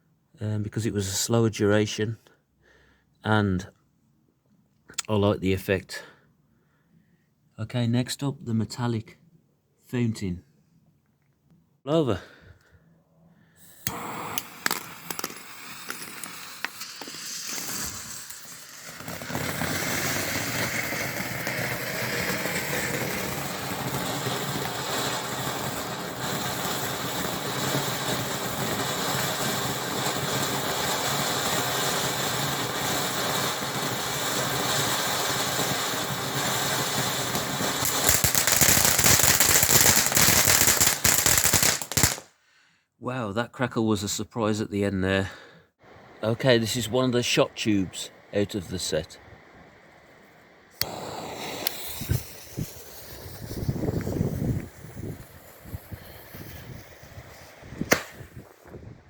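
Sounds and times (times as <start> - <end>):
firework fountain hissing: 13.6 - 42.3, 50.7 - 59.0
firework crackling: 13.7 - 42.3, 50.7 - 59.0
fuse fizzing: 13.8 - 20.8
firework pops: 13.8 - 42.3, 50.8 - 58.8.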